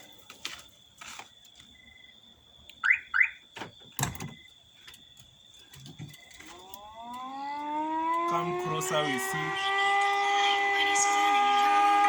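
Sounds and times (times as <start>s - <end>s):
car alarm siren: 2.8s - 3.5s, 6.2s - 12.0s.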